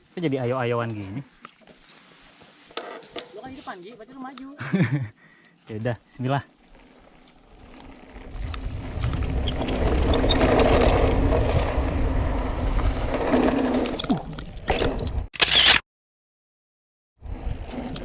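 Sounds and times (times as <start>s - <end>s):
bike tyre rumble: 6.4s - 14.8s, 17.2s - 18.0s
bike rattling and knocking: 6.7s - 13.7s
wind on microphone: 8.2s - 13.2s.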